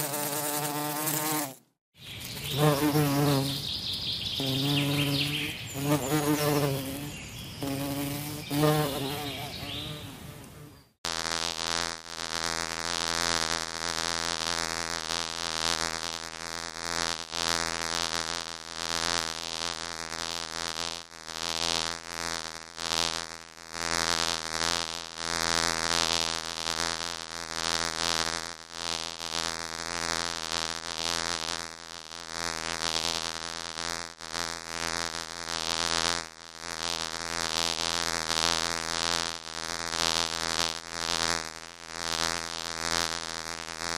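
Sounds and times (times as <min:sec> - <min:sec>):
bees buzzing: 0:00.0 - 0:01.6, 0:02.2 - 0:18.0.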